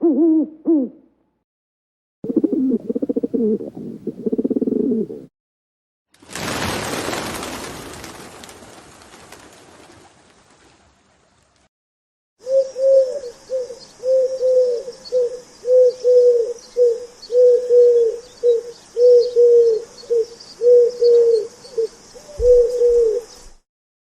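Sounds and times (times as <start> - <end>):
pigeon cooing: 0.0 - 1.1, 2.2 - 5.3, 12.4 - 23.4.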